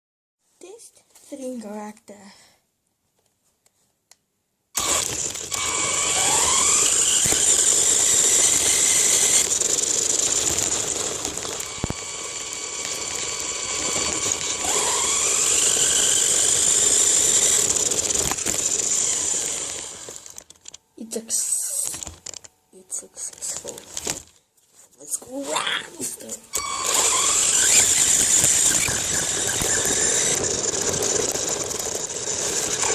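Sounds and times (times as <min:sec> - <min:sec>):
toy car motor whining: 0:04.8 - 0:20.5, 0:26.5 - 0:32.9.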